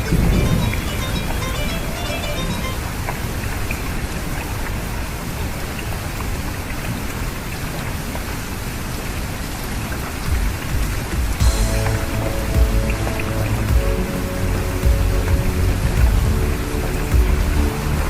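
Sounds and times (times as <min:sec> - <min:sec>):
steady rain falling: 0:00.0 - 0:18.0
low swell: 0:11.4 - 0:18.0.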